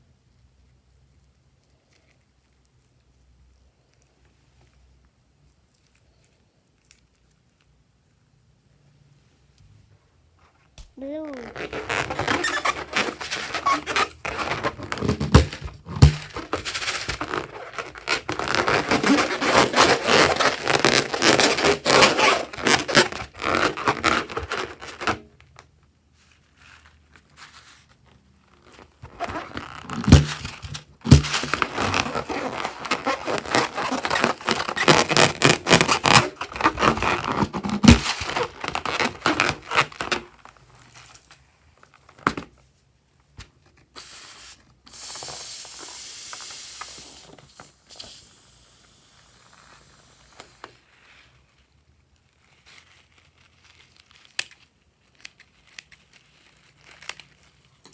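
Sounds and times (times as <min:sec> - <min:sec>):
slime squelching and crackling: 0:26.3 - 0:41.3.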